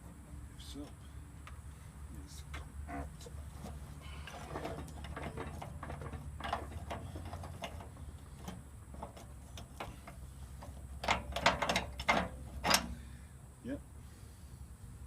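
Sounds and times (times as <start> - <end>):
metal parts clicking and knocking: 4.3 - 12.9.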